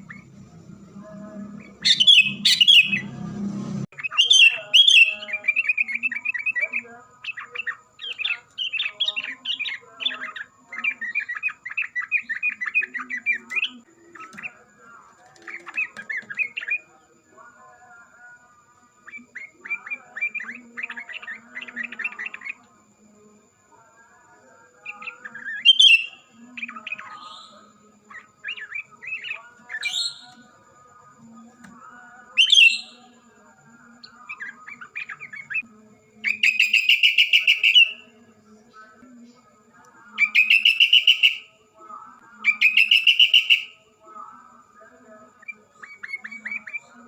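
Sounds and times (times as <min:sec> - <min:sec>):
loud rattling bird trills: 0:01.6 - 0:03.1, 0:04.0 - 0:06.6
birds whistling and chirping: 0:01.6 - 0:03.2, 0:04.0 - 0:14.6, 0:24.9 - 0:30.4, 0:32.4 - 0:33.1, 0:36.2 - 0:38.1, 0:40.2 - 0:41.5, 0:42.5 - 0:43.8.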